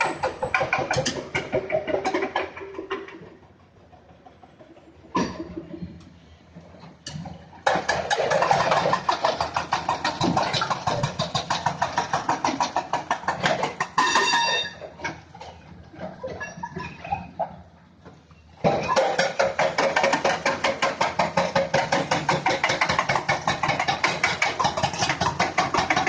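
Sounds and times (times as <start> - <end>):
heavy machinery knocking rapidly: 0.0 - 5.3, 7.6 - 14.0, 18.6 - 26.0
brief high squeal: 14.0 - 14.8.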